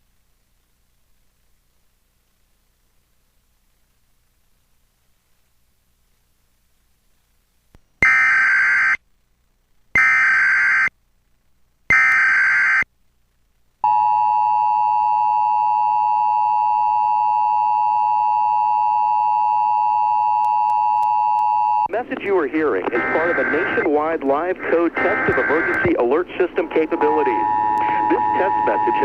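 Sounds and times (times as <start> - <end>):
steady two-tone alert: 23.0 - 24.0, 24.7 - 29.0.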